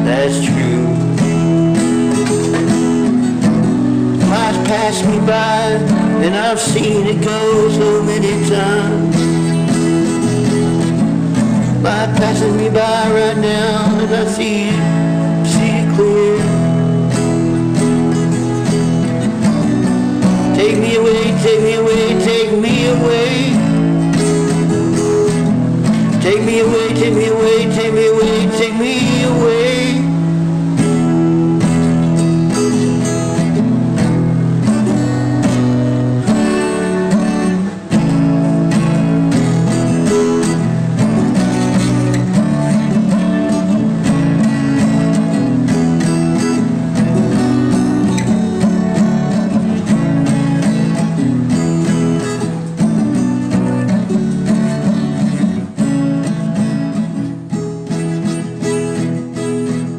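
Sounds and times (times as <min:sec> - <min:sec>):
strummed acoustic guitar music: 0:00.0 - 0:59.9.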